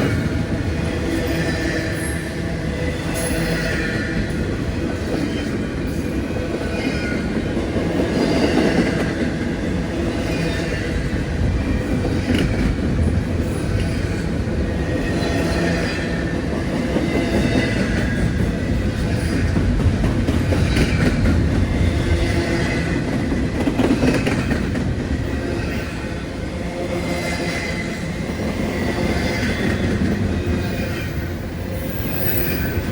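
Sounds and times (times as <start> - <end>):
train wheel clatter: 0.0 - 26.1
train wheels rumbling on rails: 0.0 - 32.9
wheel squeal: 30.6 - 32.9.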